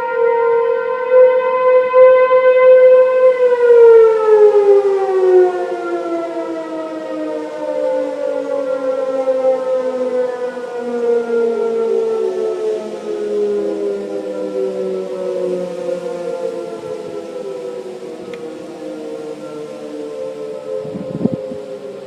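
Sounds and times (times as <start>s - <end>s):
warning siren winding down: 0.0s - 22.0s.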